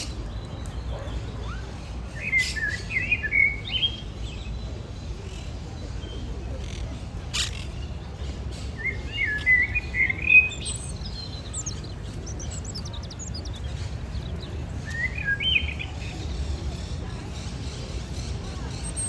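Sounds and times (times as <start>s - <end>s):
birds calling: 7.3s - 16.0s.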